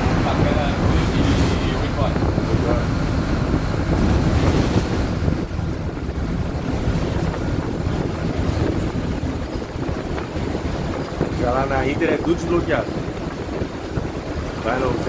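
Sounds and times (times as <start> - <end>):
bus diesel engine rumble: 0.0 - 15.0
road and wind noise: 0.0 - 15.0.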